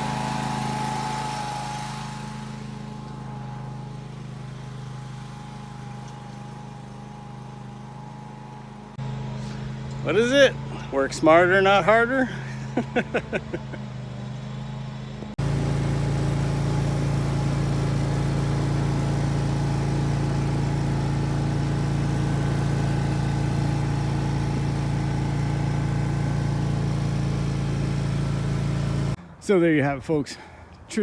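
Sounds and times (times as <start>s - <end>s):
engine running steadily: 0.0s - 29.2s.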